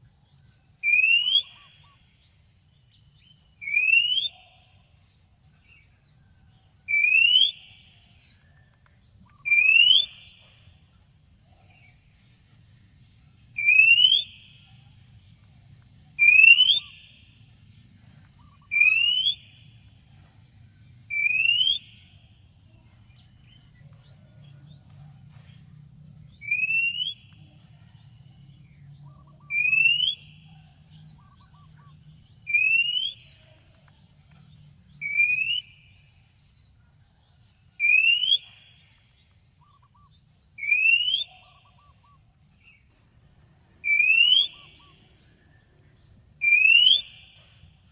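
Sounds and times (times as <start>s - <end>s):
bird rising whistle: 9.4s - 10.4s, 13.6s - 14.5s, 16.2s - 17.2s, 18.5s - 19.5s, 21.1s - 22.0s, 26.4s - 27.3s, 29.5s - 30.4s, 43.8s - 45.0s, 46.4s - 47.4s
faint low hum: 10.1s - 37.8s.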